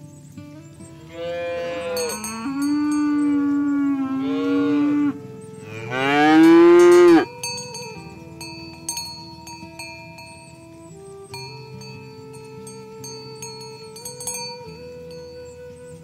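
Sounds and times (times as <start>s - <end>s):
cattle mooing: 1.0s - 7.3s.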